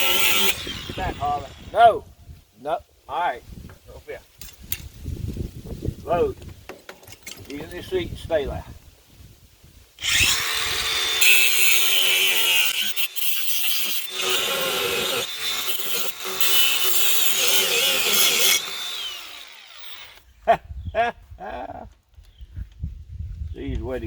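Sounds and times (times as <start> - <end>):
angle grinder cutting metal: 0.0 - 1.8, 10.0 - 20.2.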